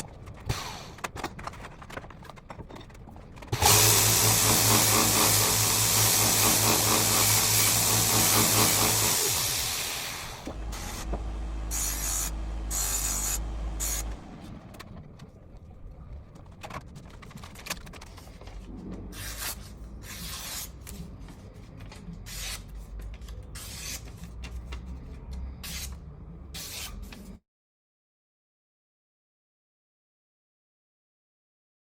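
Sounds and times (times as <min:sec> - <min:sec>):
belt grinder motor winding down: 0:03.5 - 0:14.5.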